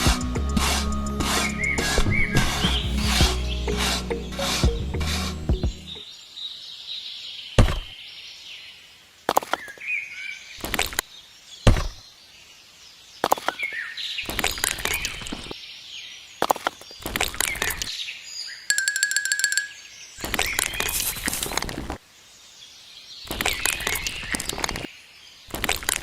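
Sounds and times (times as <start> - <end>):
birds chirping: 0.9 - 8.7, 12.9 - 21.7.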